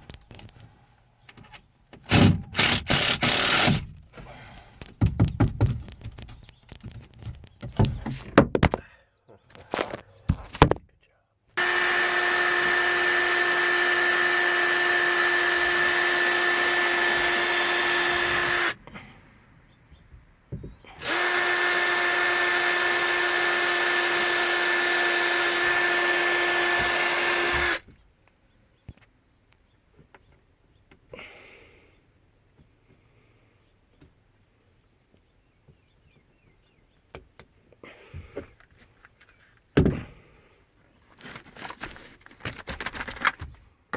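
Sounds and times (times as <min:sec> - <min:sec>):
power tool whining: 0:02.1 - 0:03.8, 0:11.6 - 0:18.8, 0:20.8 - 0:27.9.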